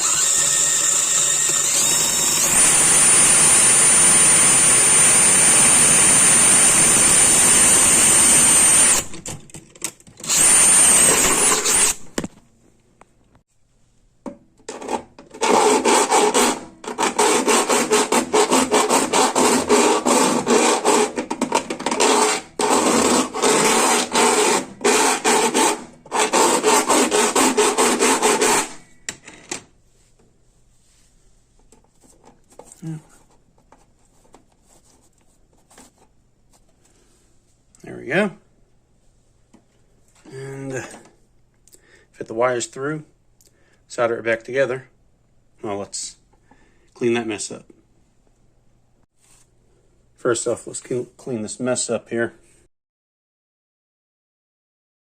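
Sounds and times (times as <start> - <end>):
power drill whining: 0.0 - 9.2, 10.2 - 12.1
file rasping metal: 14.7 - 28.8.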